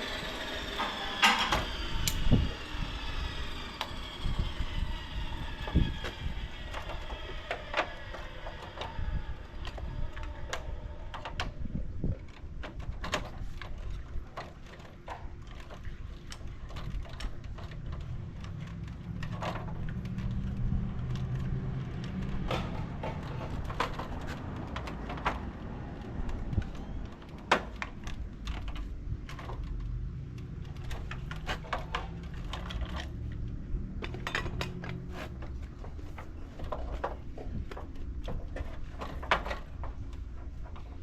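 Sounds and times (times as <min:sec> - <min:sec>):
steady low rumble: 0:15.3 - 0:41.0.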